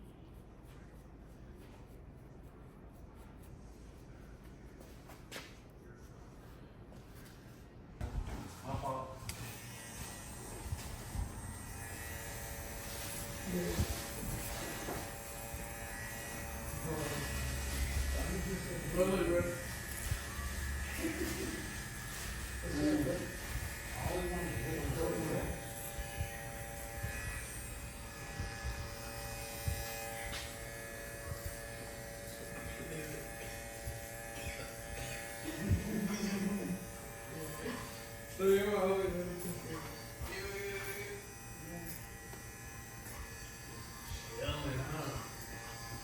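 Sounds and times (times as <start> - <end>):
electric hair clipper buzzing: 9.3 - 46.0.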